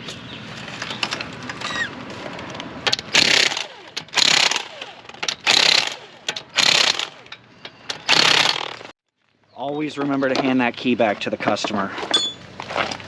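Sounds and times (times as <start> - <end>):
impact wrench hammering: 7.9 - 8.8.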